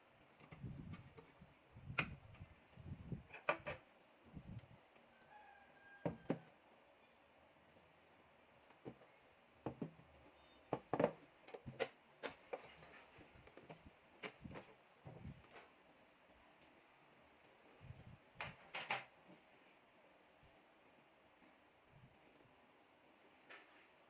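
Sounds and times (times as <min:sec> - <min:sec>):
computer parts clicking and knocking: 0:09.6 - 0:12.7.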